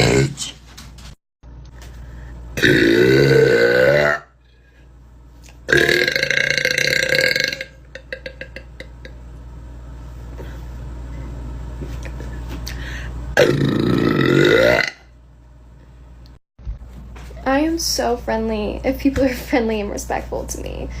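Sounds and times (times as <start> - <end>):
woman burping loudly: 2.6 - 4.4, 5.7 - 9.1, 13.4 - 15.1.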